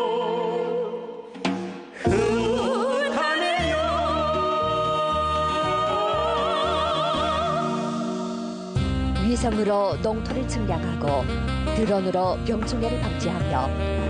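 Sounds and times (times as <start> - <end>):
person singing with vibrato: 1.9 - 8.8
instrumental accompaniment with bass beat: 7.2 - 14.0.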